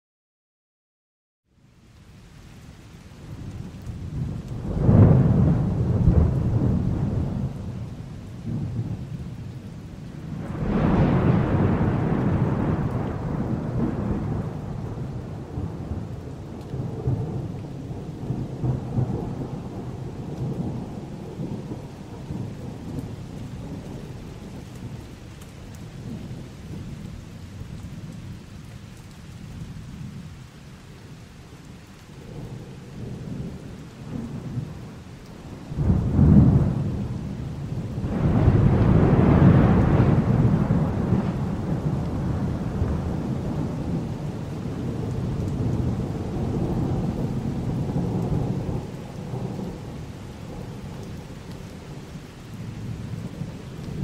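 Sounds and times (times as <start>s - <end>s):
steady rain: 1.4s - 54.0s
low thunder rumble: 3.3s - 25.2s, 32.2s - 54.0s
loud thunderclap: 4.2s - 7.8s, 10.3s - 22.8s, 35.8s - 50.8s.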